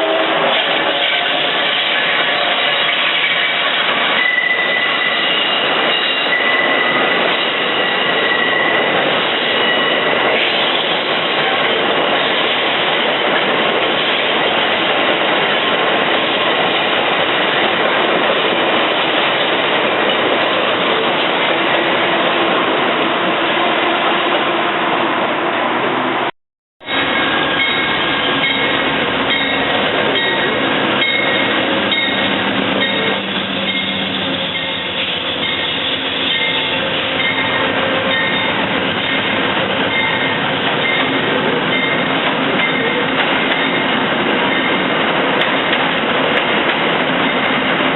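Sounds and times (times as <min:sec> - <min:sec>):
train running on rails: 0:00.0 - 0:47.9
high-pitched wheel squeal: 0:00.9 - 0:08.9.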